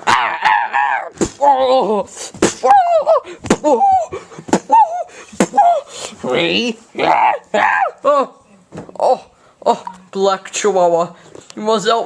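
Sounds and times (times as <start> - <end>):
person making wordless cries: 0.0 - 10.0.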